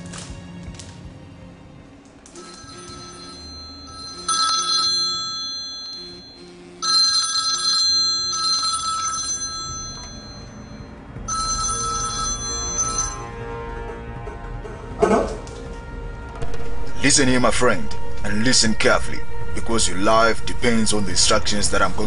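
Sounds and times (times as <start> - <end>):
faint background music: 0.0 - 22.0
telephone ringing: 2.3 - 13.3.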